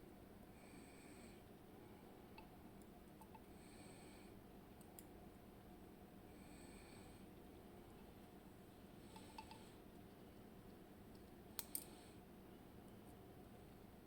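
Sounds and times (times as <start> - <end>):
small metal parts clicking: 11.6 - 11.9.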